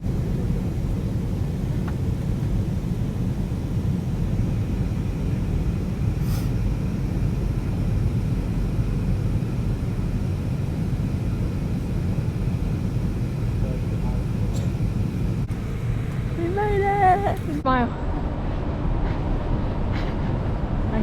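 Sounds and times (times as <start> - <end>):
low vehicle rumble: 0.0 - 21.0
brief hiss: 6.2 - 6.6.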